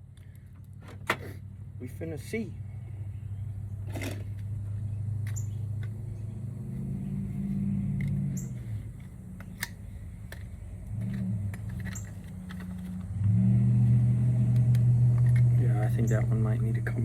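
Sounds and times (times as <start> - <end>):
steady low hum: 0.0 - 17.0
metal tool clicks and taps: 9.0 - 12.7.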